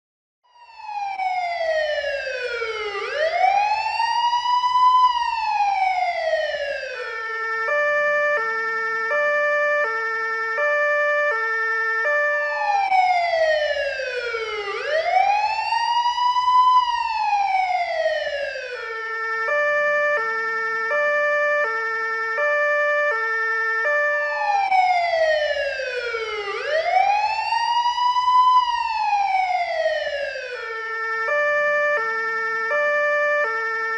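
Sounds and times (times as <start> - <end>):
police car siren: 0.4 - 33.9.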